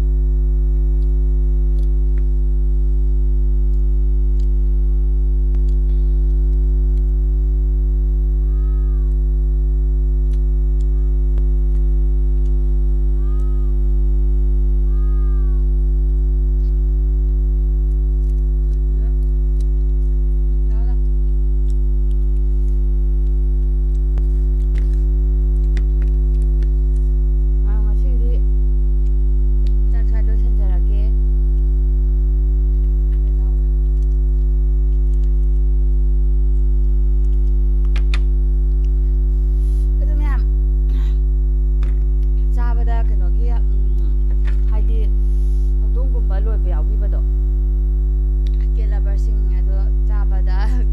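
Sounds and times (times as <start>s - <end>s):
loud electrical hum: 0.0s - 50.9s
faint voice: 8.4s - 9.2s, 13.1s - 13.8s, 14.8s - 15.8s.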